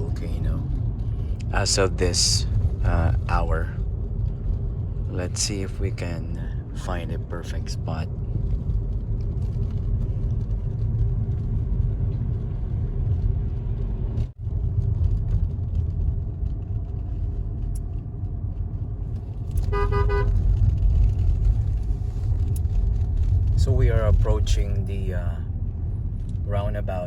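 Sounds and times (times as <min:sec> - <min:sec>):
car engine and road rumble: 0:00.0 - 0:27.0
car horn: 0:19.6 - 0:20.4.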